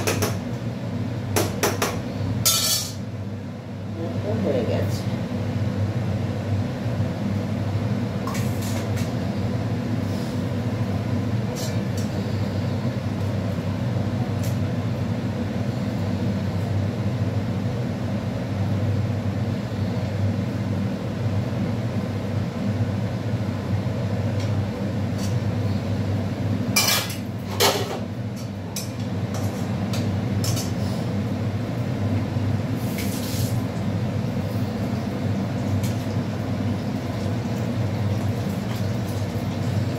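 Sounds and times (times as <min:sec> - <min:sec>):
steady low hum: 0:00.0 - 0:39.9
kitchen utensils clinking: 0:02.5 - 0:03.0, 0:26.8 - 0:28.0.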